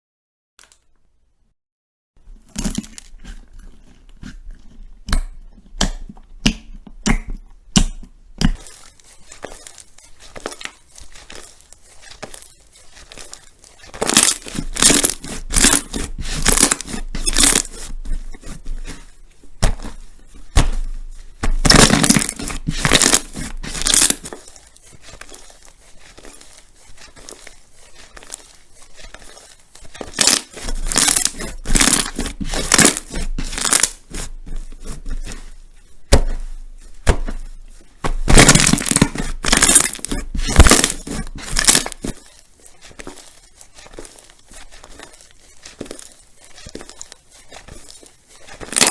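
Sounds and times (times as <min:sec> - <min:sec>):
slime squeezed crackling pops: 0:13.9 - 0:17.8, 0:19.6 - 0:24.3, 0:30.0 - 0:35.4, 0:38.2 - 0:42.1.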